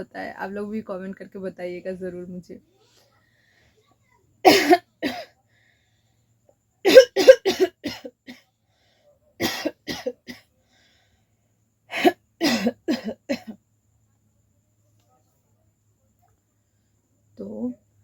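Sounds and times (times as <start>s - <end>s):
woman coughing: 4.4s - 5.4s, 6.8s - 8.4s, 9.4s - 10.4s, 11.9s - 13.6s.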